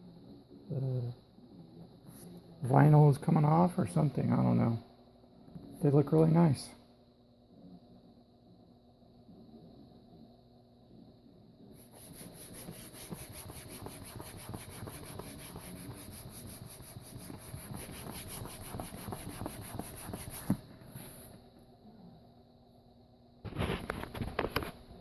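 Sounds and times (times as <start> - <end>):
hand scrubbing a surface: 11.8 - 21.3.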